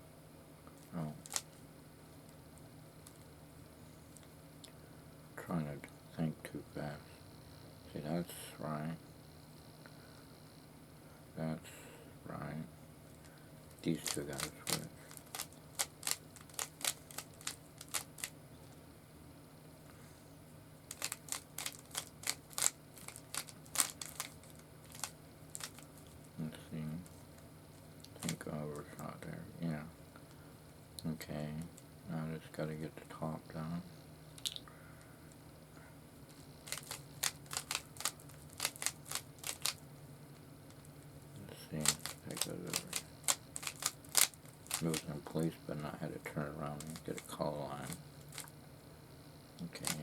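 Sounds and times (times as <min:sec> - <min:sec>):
puzzle cube twisting clicks: 0:01.2 - 0:01.5, 0:14.0 - 0:18.3, 0:20.9 - 0:25.9, 0:36.6 - 0:39.8, 0:41.8 - 0:45.0, 0:49.8 - 0:50.0.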